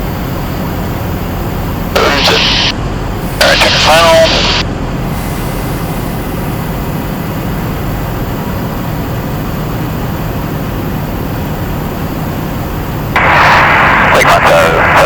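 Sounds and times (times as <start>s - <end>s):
propeller airplane engine drone: 0.0s - 15.0s.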